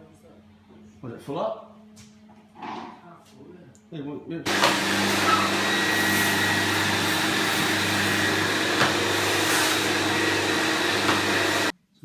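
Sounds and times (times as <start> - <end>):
floor machine motor hum: 4.5 - 11.7.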